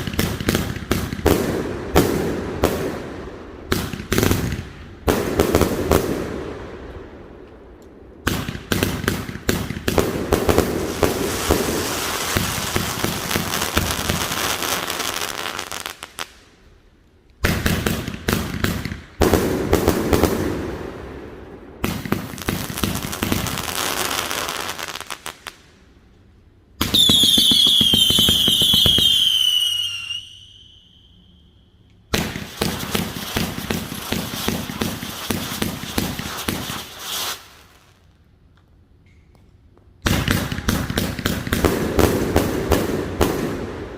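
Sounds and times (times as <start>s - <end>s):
fireworks firing rapid shots: 0.0s - 3.1s, 3.7s - 6.4s, 8.2s - 16.0s, 17.4s - 20.7s, 21.8s - 25.3s, 32.1s - 37.6s, 40.0s - 43.8s
high falling firework whistles: 26.9s - 37.8s.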